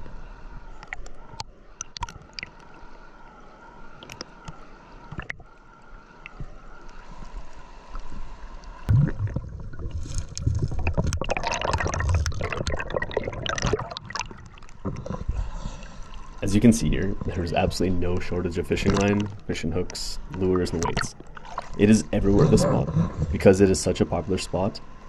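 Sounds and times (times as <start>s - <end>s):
river water gurgling: 0.8s - 25.0s
water splashing: 7.8s - 24.7s.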